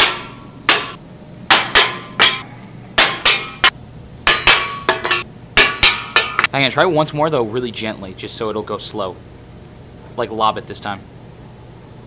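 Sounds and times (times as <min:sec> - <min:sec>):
sharp metallic bangs: 0:00.0 - 0:06.5.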